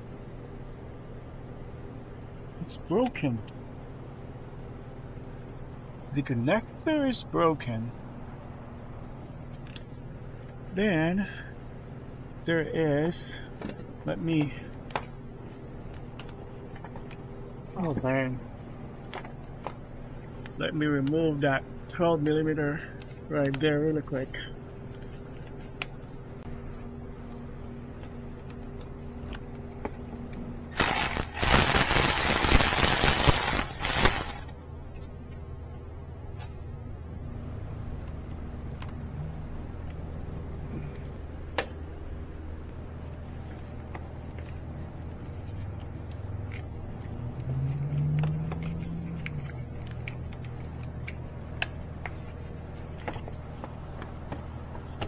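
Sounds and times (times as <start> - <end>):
steady low hum: 0.0 - 55.0
power ratchet spinning out bolt: 30.8 - 34.6.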